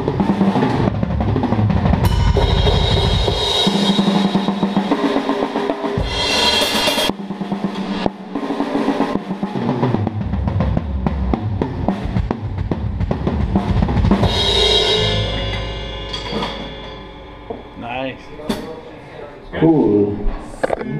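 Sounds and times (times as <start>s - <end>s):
bass drum beats: 0.0s - 18.2s
snare and tom strokes: 1.9s - 9.7s
cymbal crash: 2.0s - 9.2s, 14.2s - 18.8s.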